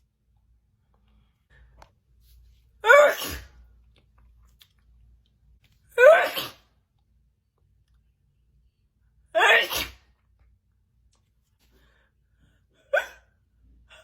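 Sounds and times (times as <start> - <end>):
woman sneezing: 2.8 - 3.6, 6.0 - 6.7, 9.4 - 10.0.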